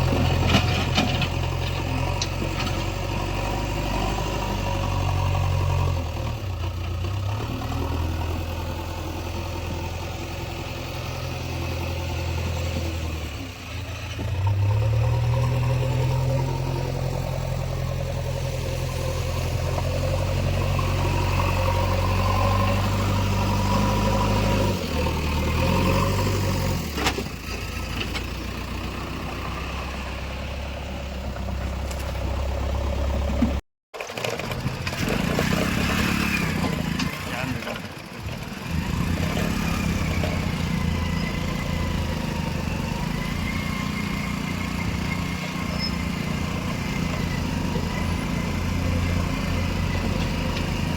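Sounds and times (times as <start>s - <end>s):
diesel engine running: 34.4s - 50.9s.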